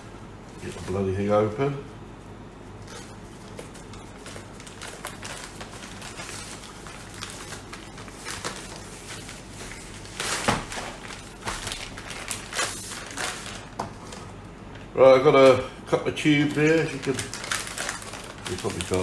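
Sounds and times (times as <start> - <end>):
packaging rustling and crinkling: 2.8 - 14.4, 16.2 - 19.0.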